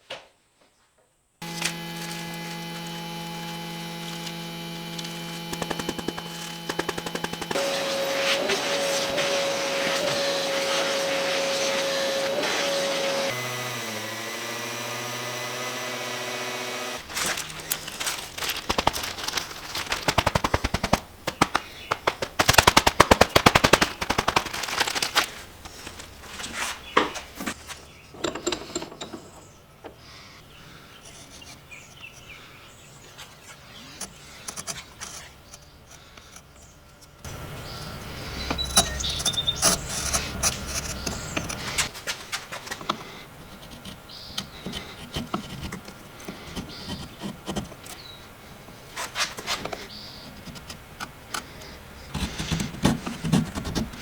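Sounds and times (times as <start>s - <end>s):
power tool whining: 1.4s - 27.2s, 33.4s - 50.1s.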